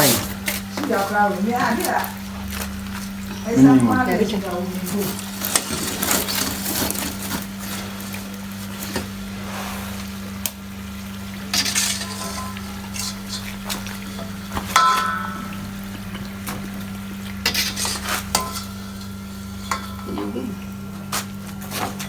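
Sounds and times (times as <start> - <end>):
metal utensils scraping a pot: 3.3 - 7.9, 11.5 - 15.5, 17.4 - 20.2.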